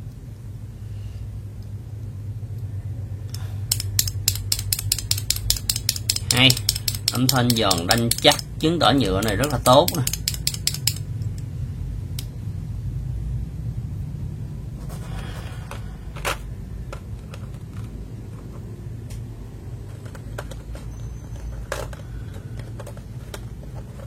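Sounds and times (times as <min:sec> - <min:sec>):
keycaps clacking: 0:03.7 - 0:11.5, 0:15.6 - 0:24.0.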